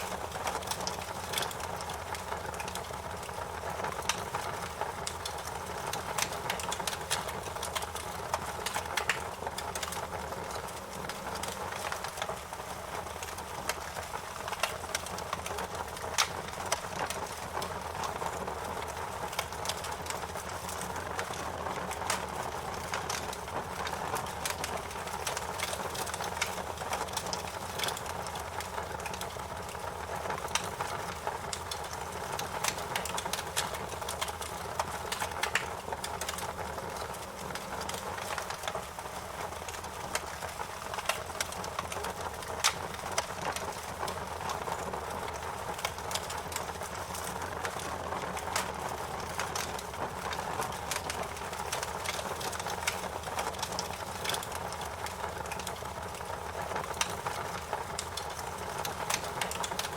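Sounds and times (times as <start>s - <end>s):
wood fire crackling: 0.0s - 59.9s
sharp pops and snaps: 22.0s - 59.9s.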